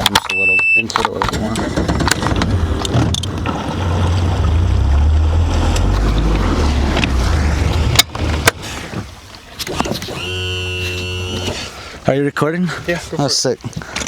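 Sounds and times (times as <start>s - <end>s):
water and wind noise: 0.0s - 14.0s
boat motor running: 1.1s - 11.9s.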